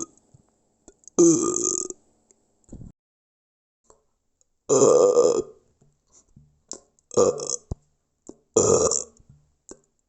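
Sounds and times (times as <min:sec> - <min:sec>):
person burping: 0:01.2 - 0:02.0, 0:04.7 - 0:05.6, 0:06.8 - 0:09.2.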